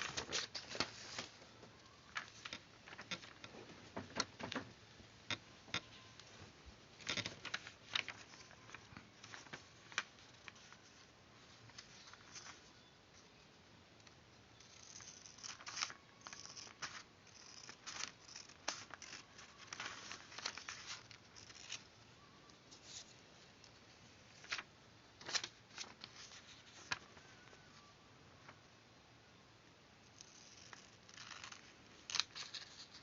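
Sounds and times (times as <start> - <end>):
scissors cutting paper: 14.6 - 21.8.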